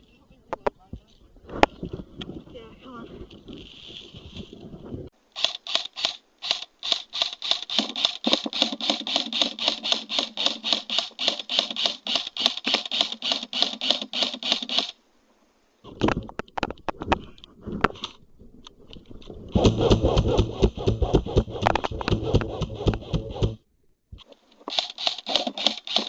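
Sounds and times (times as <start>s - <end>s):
airsoft gun clicking: 5.4s - 15.0s, 24.6s - 26.0s.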